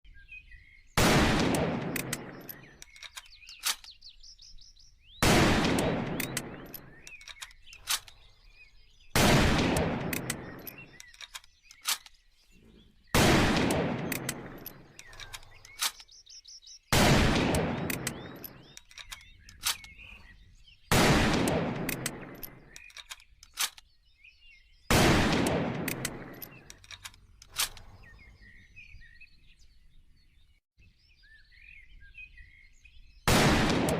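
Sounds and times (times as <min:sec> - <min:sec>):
birds chirping faintly: 0:00.1 - 0:33.3
rifle shots with echo: 0:01.0 - 0:03.0, 0:05.2 - 0:08.1, 0:09.1 - 0:12.1, 0:13.1 - 0:16.0, 0:16.9 - 0:20.0, 0:20.9 - 0:22.9, 0:24.9 - 0:28.0, 0:33.3 - 0:33.9.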